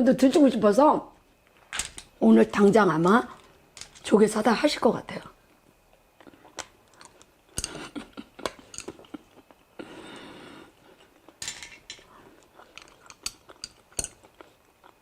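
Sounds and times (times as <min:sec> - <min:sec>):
utensils and shells clattering on dish: 0:08.6 - 0:09.0, 0:11.4 - 0:12.1, 0:12.8 - 0:14.2.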